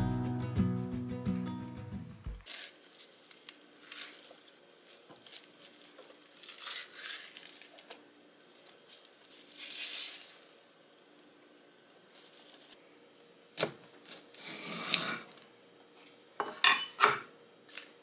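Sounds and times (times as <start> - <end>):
rustling and crinkling: 2.4 - 12.8.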